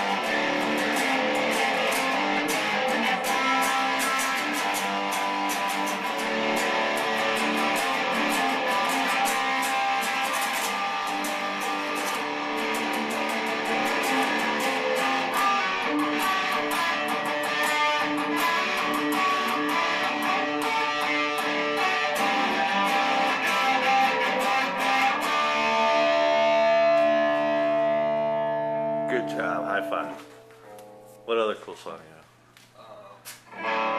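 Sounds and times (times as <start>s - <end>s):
guitar strummed and picked: 0.0s - 31.3s, 33.5s - 33.9s.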